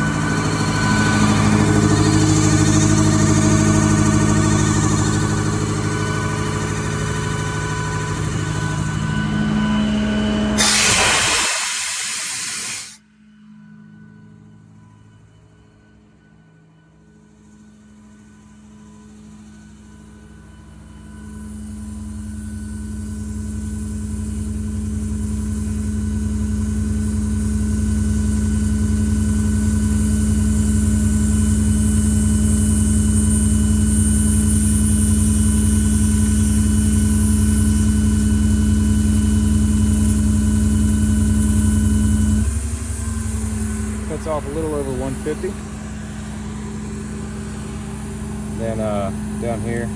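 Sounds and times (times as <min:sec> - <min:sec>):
air compressor humming: 0:00.0 - 0:13.0, 0:30.0 - 0:49.9.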